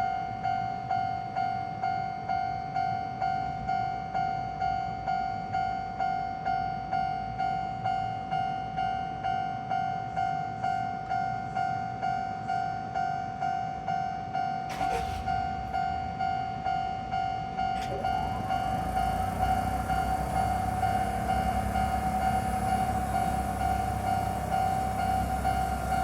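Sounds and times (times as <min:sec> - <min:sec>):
level-crossing warning bell ringing: 0:00.0 - 0:26.0
brief hiss: 0:14.7 - 0:16.0.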